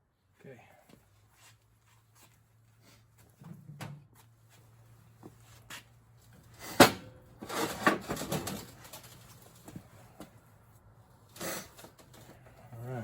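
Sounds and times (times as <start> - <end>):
objects clattering: 6.7 - 10.3.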